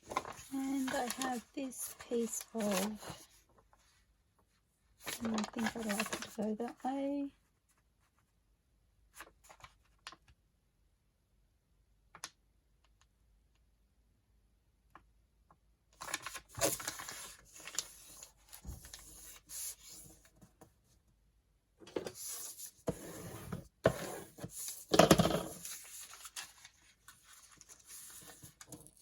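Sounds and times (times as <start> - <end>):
paper crackles: 0.0 - 3.8, 5.0 - 7.1, 16.0 - 20.1, 25.5 - 29.0
paper rustling: 0.0 - 3.9, 5.0 - 6.9, 16.0 - 20.7, 23.9 - 29.0.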